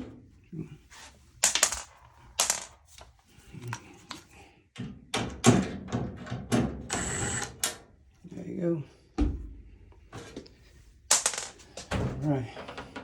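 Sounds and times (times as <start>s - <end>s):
panels knocking and clacking: 1.4s - 2.7s, 11.1s - 13.0s.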